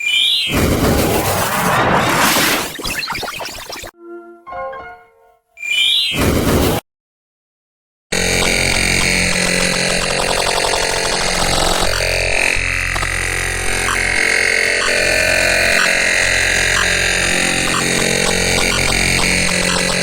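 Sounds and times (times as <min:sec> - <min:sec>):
glitch electronic ringtone: 0:02.6 - 0:04.0.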